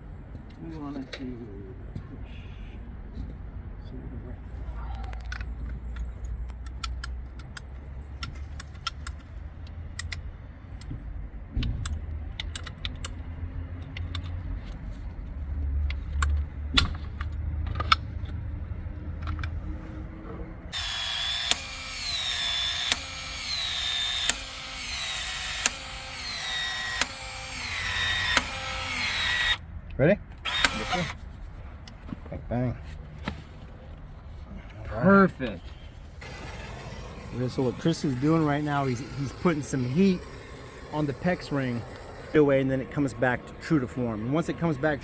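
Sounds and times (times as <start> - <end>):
expansion tool motor whine: 20.7 - 29.6, 30.4 - 31.2, 36.2 - 45.0.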